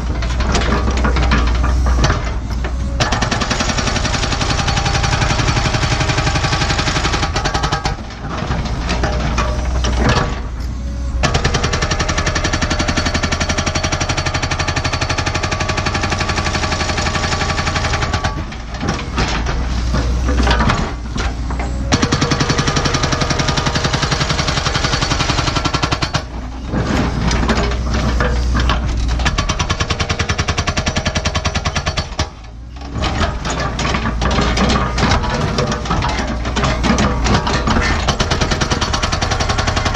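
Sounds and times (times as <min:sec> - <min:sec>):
excavator diesel engine running: 0:00.0 - 0:39.9
hydraulic rock hammer pounding bedrock: 0:11.2 - 0:39.9.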